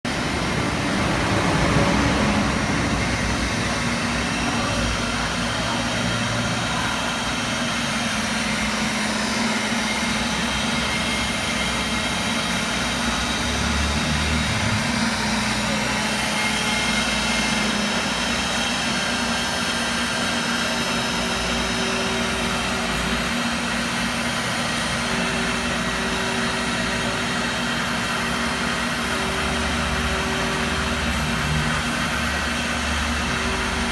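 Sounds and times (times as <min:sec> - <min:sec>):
steady high tone: 0:00.1 - 0:19.7
machine mechanical hum: 0:00.1 - 0:33.9.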